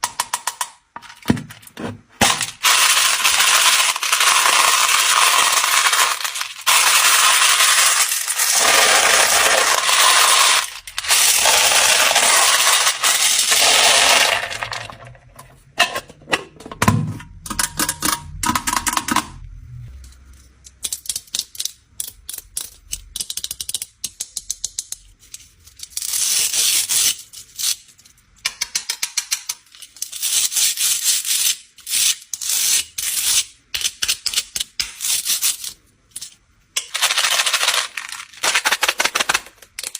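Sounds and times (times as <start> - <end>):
hard candies pouring and clattering: 2.2 - 15.3, 36.8 - 39.9.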